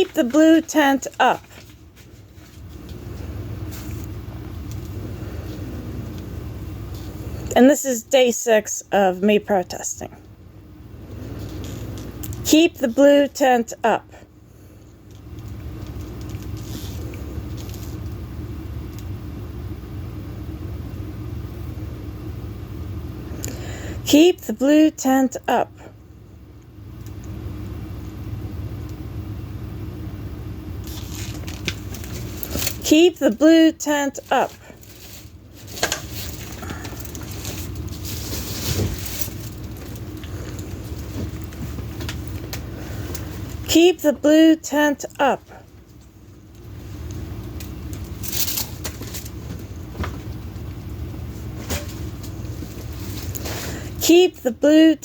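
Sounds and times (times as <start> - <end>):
low steady rumble: 0.0 - 55.0.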